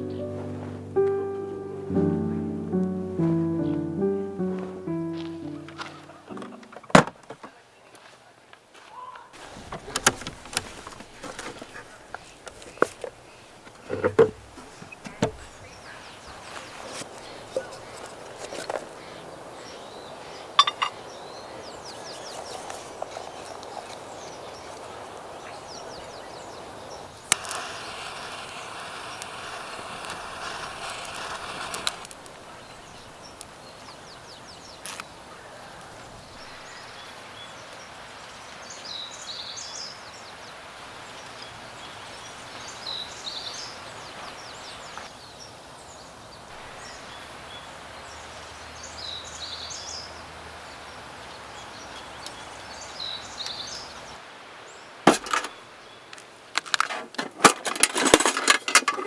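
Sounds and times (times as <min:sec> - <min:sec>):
bird chirping: 0:00.0 - 0:06.9
steady hiss: 0:00.0 - 0:07.2, 0:09.4 - 0:59.0
loud rushing hiss: 0:27.1 - 0:32.4.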